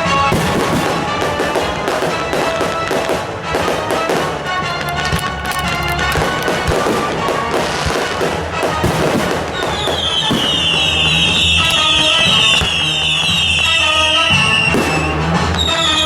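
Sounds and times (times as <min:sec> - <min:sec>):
fireworks crackling and popping: 0:00.0 - 0:16.0
music: 0:00.0 - 0:16.0
high whistling tone falling: 0:09.6 - 0:16.0.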